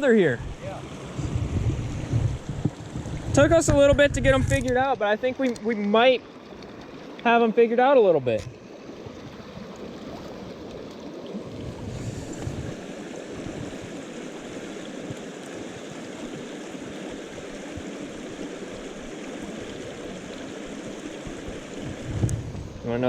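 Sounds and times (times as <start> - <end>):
stream water rushing: 0.0 - 23.0
wind on microphone: 0.3 - 5.0, 11.4 - 16.3, 17.0 - 23.0.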